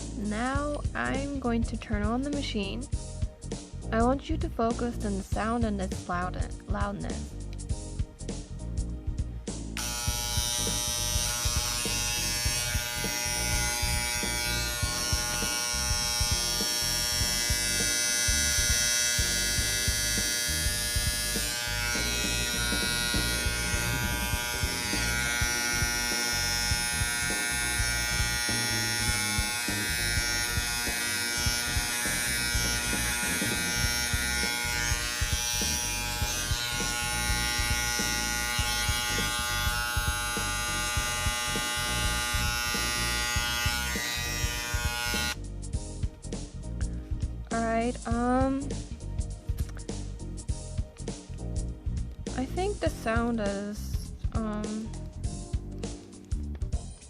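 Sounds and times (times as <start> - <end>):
hair trimmer buzzing: 9.8 - 45.4.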